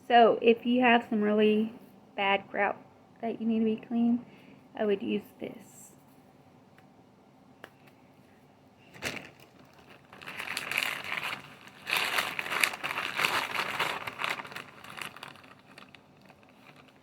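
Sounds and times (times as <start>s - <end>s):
packaging crinkling and rustling: 8.8s - 17.0s.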